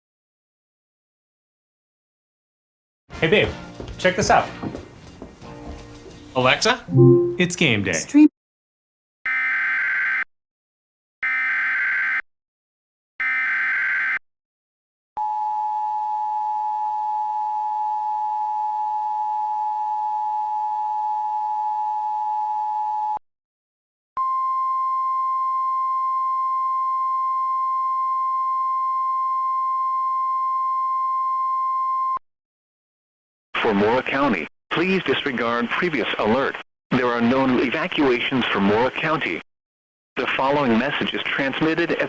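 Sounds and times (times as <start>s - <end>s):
two-tone attention signal: 6.9s - 7.5s
steady alert tone: 6.9s - 7.6s.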